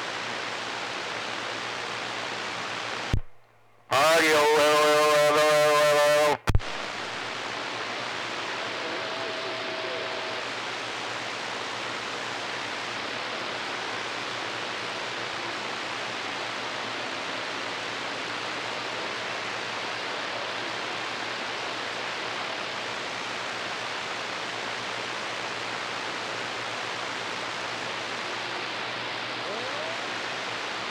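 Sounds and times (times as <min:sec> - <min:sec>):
radio static hiss: 0:00.0 - 0:30.9
sharp click: 0:03.2 - 0:03.6, 0:06.4 - 0:06.8.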